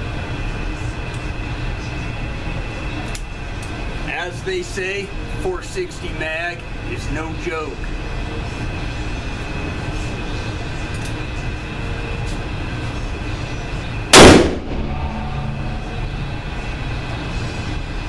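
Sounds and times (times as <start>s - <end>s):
steady background hum: 0.0s - 18.0s
handgun shot with echo: 14.2s - 14.9s.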